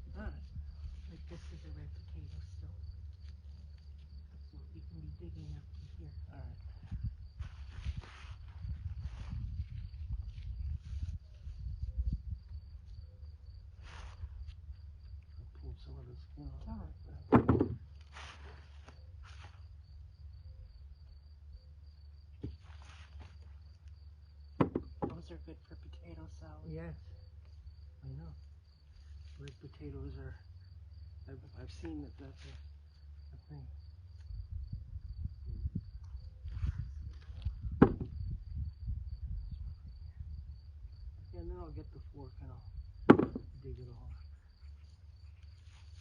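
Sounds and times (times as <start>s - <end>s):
soft thumps of handling soil: 0.0s - 16.0s, 16.7s - 19.8s, 22.2s - 25.5s, 35.2s - 39.4s, 42.2s - 46.0s
faint rustles: 0.0s - 16.4s, 17.2s - 25.3s, 27.0s - 41.0s, 42.7s - 46.0s
crickets chirping: 0.0s - 46.0s
soft knock: 24.6s - 25.2s, 43.1s - 43.5s.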